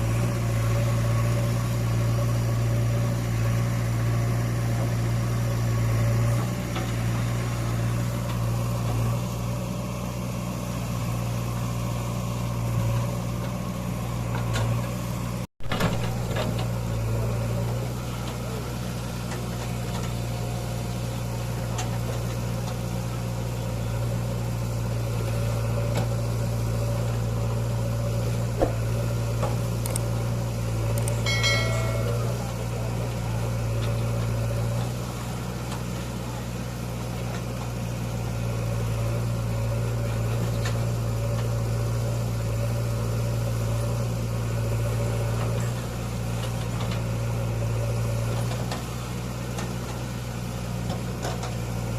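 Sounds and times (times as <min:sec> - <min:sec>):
diesel engine running: 0:00.0 - 0:51.9.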